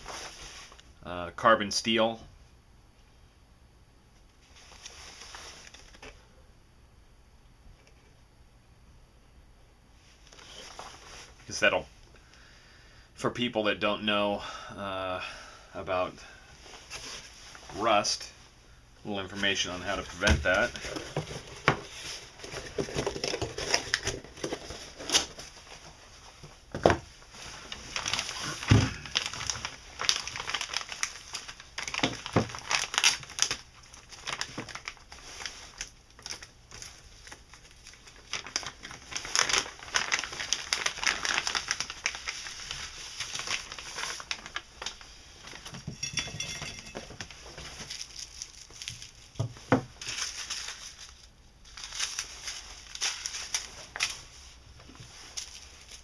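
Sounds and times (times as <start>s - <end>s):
packaging wrap crinkling: 4.5s - 6.2s, 10.2s - 11.4s, 19.3s - 56.0s.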